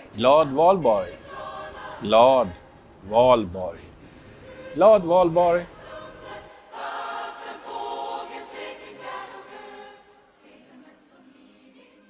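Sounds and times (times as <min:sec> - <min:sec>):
choir singing: 0:00.0 - 0:12.0.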